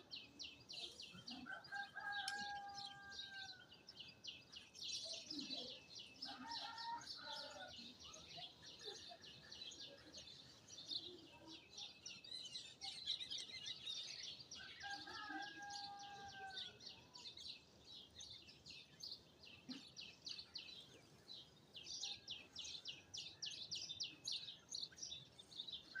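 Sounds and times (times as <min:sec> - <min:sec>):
small birds chirping: 0:03.5 - 0:15.0.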